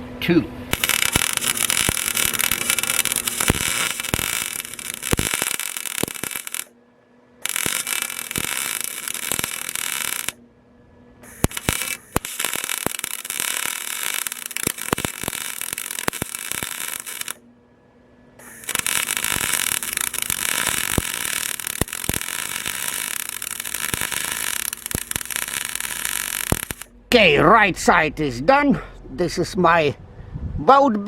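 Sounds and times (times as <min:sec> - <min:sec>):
welding arc crackling and hissing: 0:00.7 - 0:06.7, 0:07.4 - 0:10.4, 0:11.2 - 0:17.4, 0:18.4 - 0:26.9.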